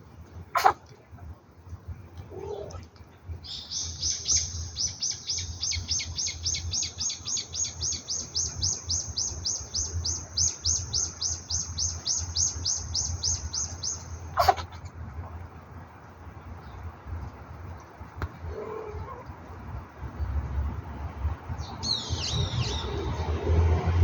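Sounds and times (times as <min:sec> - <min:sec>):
bird chirping: 0:03.5 - 0:14.6, 0:21.6 - 0:23.4.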